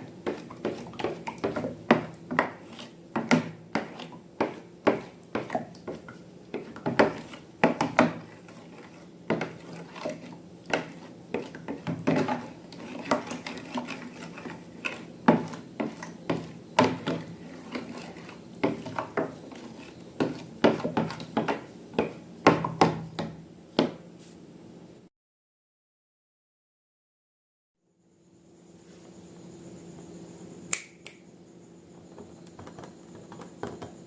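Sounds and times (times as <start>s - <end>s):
utensil clicking and scraping dish: 0.2s - 22.2s
faint steady hum: 27.8s - 34.0s.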